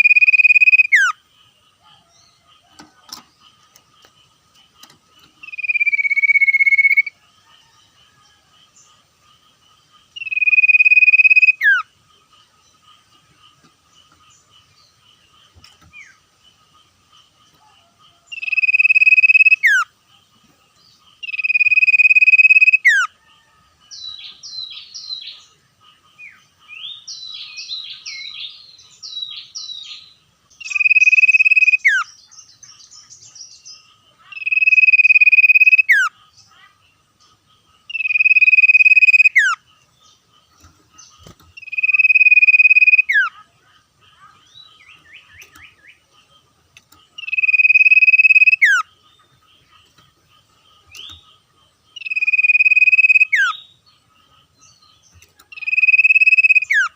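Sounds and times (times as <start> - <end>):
bird chattering notes: 0.0 - 1.2, 2.6 - 7.2, 10.1 - 11.9, 18.4 - 19.9, 21.2 - 23.1, 30.6 - 32.1, 34.2 - 36.2, 37.8 - 39.7, 40.6 - 56.9
bird whistling: 0.0 - 1.2, 5.4 - 7.1, 10.2 - 11.8, 21.2 - 23.1, 34.4 - 36.1, 37.9 - 39.6, 41.6 - 43.3, 47.2 - 48.8, 52.0 - 53.6, 55.5 - 56.9.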